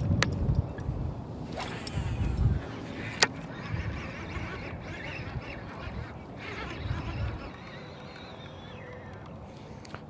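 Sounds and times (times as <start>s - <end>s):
waterfowl calling: 3.0s - 9.2s.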